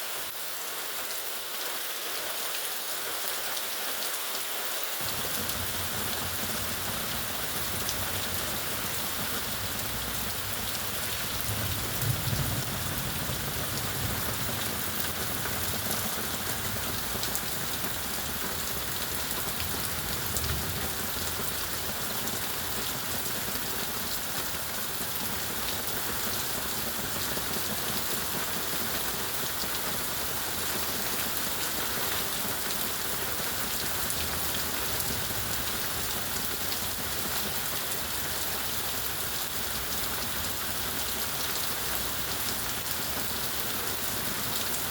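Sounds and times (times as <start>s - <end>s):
steady rainfall: 0.0s - 44.9s.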